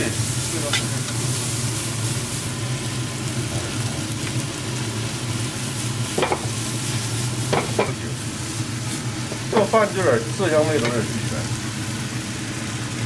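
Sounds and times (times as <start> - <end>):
noodles sizzling in a wok: 0.0 - 13.0.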